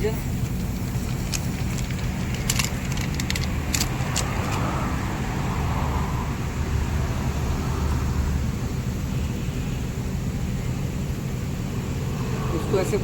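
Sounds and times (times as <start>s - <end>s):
low rumble of traffic: 0.0s - 13.0s
tools clicking and tapping: 0.4s - 4.6s.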